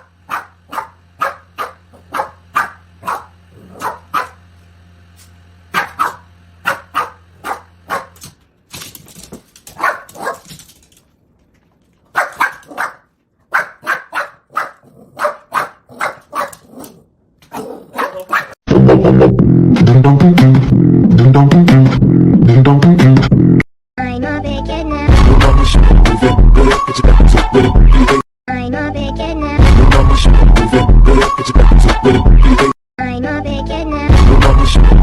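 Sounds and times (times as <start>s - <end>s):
dog barking: 0.0s - 4.4s, 5.7s - 8.2s, 9.8s - 10.5s, 12.1s - 18.6s.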